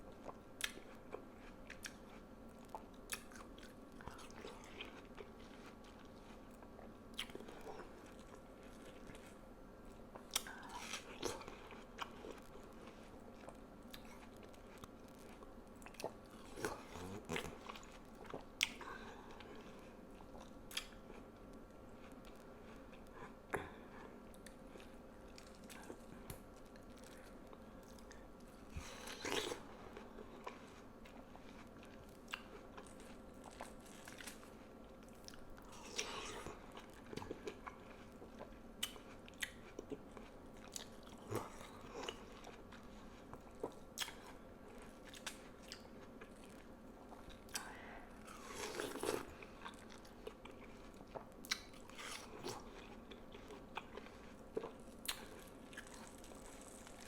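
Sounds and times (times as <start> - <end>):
wet chewing: 24.3 - 57.0.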